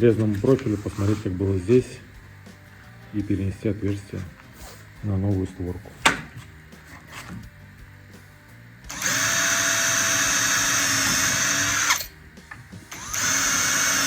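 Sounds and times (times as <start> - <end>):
electric drill boring: 8.8 - 14.0.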